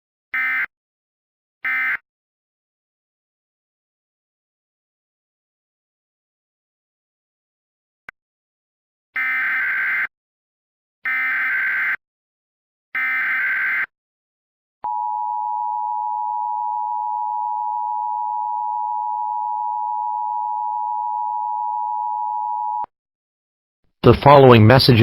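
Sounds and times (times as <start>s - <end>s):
two-tone attention signal: 14.8s - 22.9s.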